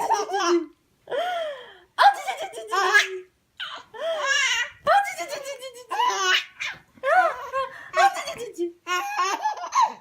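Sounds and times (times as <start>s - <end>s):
baby laughing: 2.3s - 7.6s, 8.8s - 10.0s.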